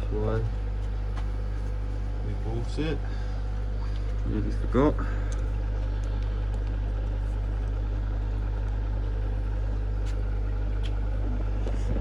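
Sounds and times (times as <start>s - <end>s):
equipment humming low: 0.0s - 12.0s.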